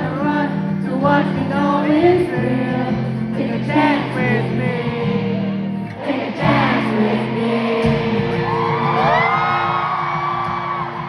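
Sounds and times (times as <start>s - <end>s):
crowd singing along: 0.0s - 11.0s
crowd screaming and whooping: 4.8s - 11.0s
live band playing chords: 6.0s - 9.9s.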